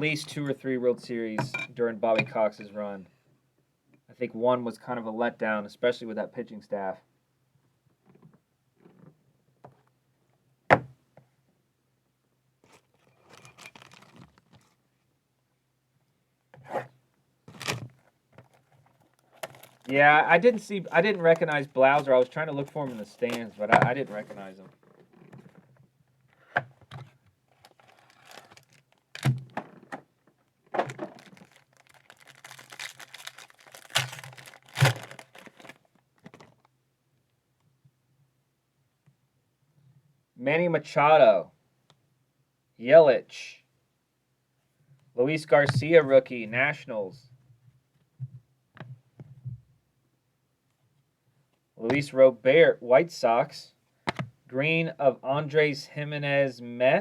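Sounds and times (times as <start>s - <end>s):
wrapper crinkling and tearing: 12.6s - 14.8s, 17.5s - 24.4s, 27.5s - 29.5s, 30.8s - 36.7s
cards scraping: 17.5s - 24.5s, 27.0s - 29.3s, 31.0s - 36.4s
trading cards rustling and tapping: 17.5s - 24.5s, 31.0s - 36.6s.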